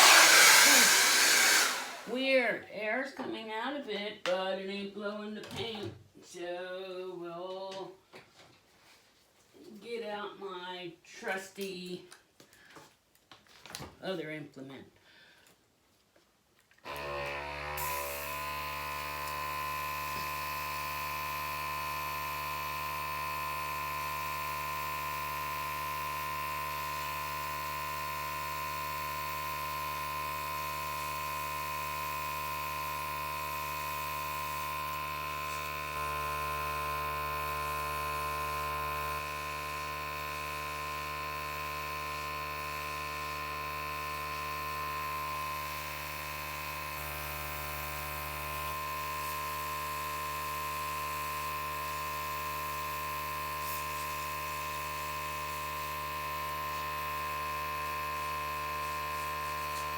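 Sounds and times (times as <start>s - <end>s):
electric air gun whining: 0.0s - 2.3s, 16.9s - 59.9s.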